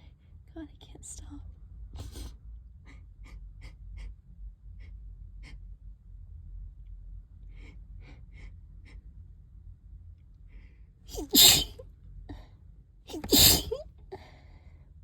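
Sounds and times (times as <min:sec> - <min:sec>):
person sneezing: 0:11.1 - 0:11.8, 0:13.1 - 0:13.8
person's short sharp breaths: 0:11.1 - 0:11.8, 0:13.1 - 0:14.3.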